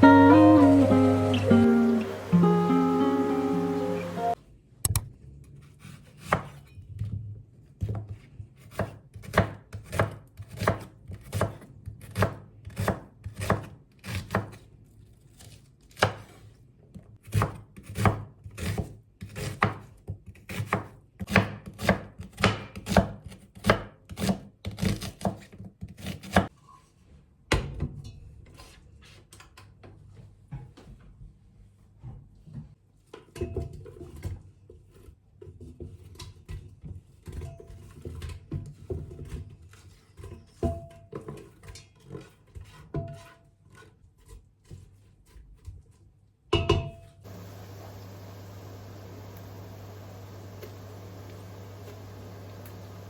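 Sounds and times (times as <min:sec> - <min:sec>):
knife chopping on cutting board: 0:04.9 - 0:06.6, 0:07.8 - 0:14.6, 0:15.4 - 0:16.4, 0:17.2 - 0:26.5.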